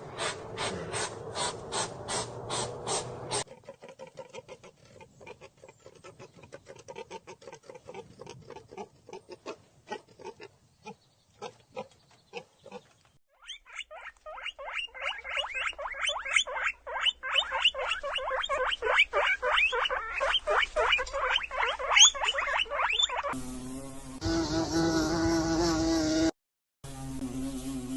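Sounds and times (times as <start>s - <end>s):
clicking animal grunts: 3.3s - 10.5s
high squeaky animal calls: 13.3s - 23.4s.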